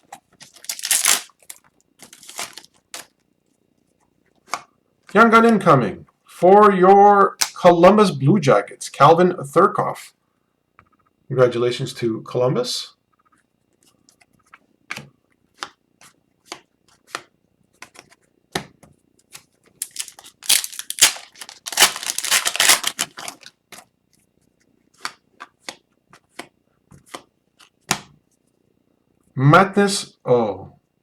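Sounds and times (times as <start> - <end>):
cards rustling and crackling: 0.0 - 3.2, 19.2 - 23.9
cards clicking and snapping: 0.1 - 3.1, 19.8 - 23.9.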